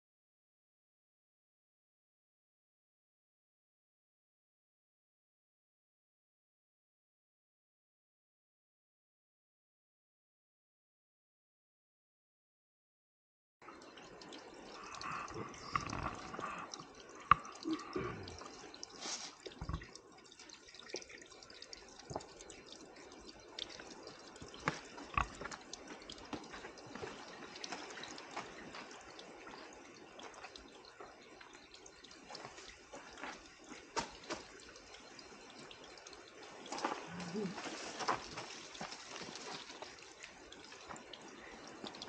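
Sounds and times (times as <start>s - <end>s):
water trickling and dripping: 13.6s - 42.0s.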